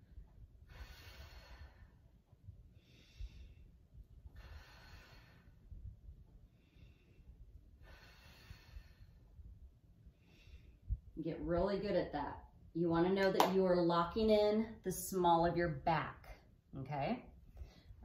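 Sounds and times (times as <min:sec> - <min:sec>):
woman breathing: 0:00.0 - 0:11.2, 0:17.4 - 0:18.0.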